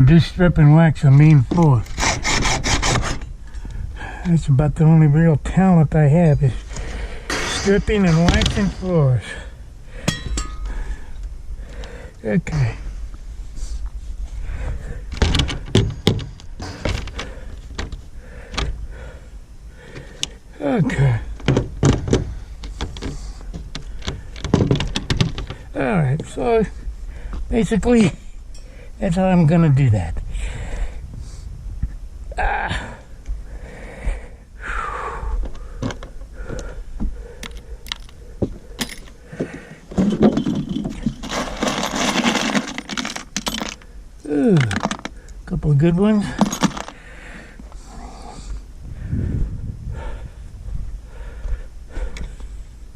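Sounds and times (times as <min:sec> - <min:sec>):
metal screws clinking: 0:10.0 - 0:10.8, 0:38.8 - 0:39.2, 0:40.0 - 0:43.8, 0:46.4 - 0:47.0.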